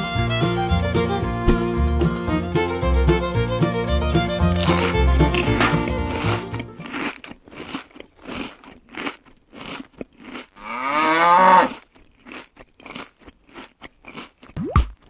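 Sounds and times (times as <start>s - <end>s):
short crunching clicks: 4.5s - 14.6s
cow mooing: 10.6s - 11.7s.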